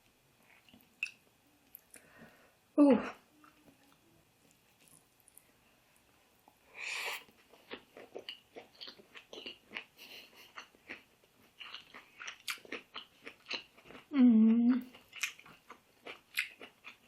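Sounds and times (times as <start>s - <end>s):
noisy breath: 1.9s - 2.7s
close chewing crunches: 10.5s - 14.1s, 14.9s - 17.0s.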